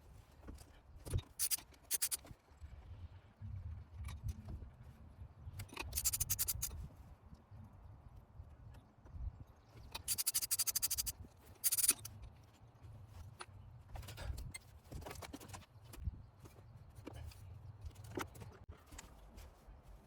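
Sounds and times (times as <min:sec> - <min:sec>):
ratchet wrench clicking: 0:01.4 - 0:02.2, 0:05.8 - 0:06.7, 0:10.0 - 0:12.1.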